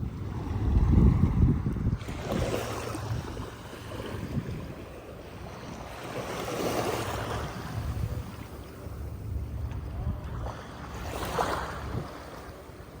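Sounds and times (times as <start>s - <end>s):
small waves washing on beach: 0.0s - 13.0s
wind rumbling on microphone: 0.0s - 13.0s.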